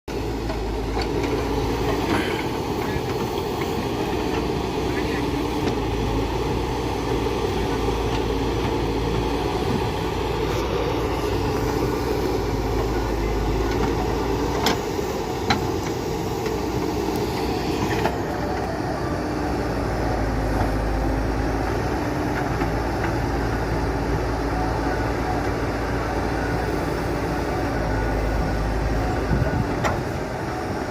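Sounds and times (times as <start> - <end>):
diesel engine running: 0.1 - 30.9.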